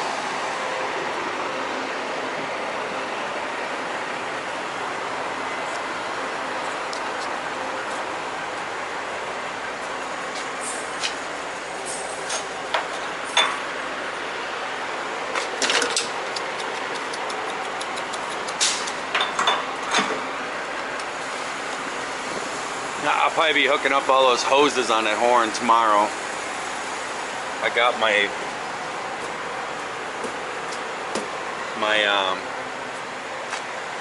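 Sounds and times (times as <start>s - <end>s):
diesel pump fuelling noise: 0.0s - 34.0s
steady rushing noise of trucks: 0.0s - 34.0s
sharp clicks and knocks: 15.4s - 20.2s.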